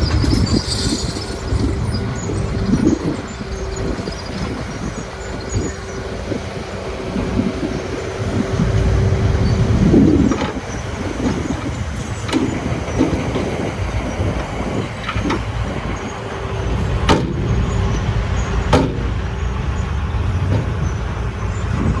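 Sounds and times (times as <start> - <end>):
road roller engine rumbling: 0.0 - 22.0.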